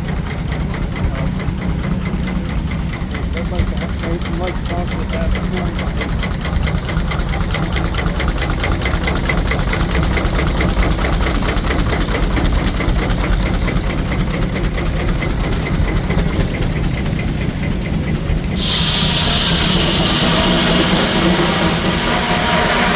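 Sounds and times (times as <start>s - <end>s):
steam engine running: 0.0s - 22.9s.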